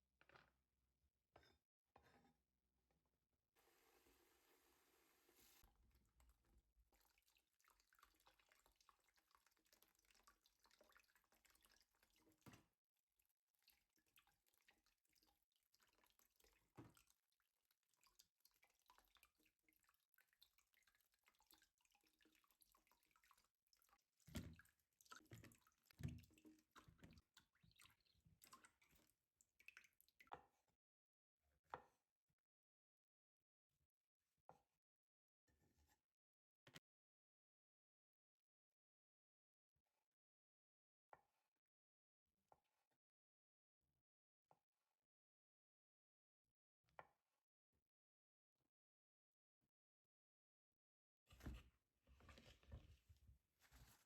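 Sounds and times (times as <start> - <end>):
water dripping: 6.9 - 12.6, 17.9 - 30.2.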